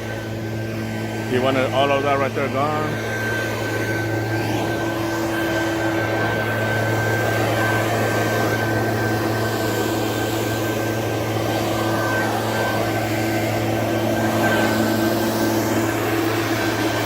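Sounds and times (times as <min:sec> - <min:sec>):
small gas engine running: 0:00.0 - 0:17.0.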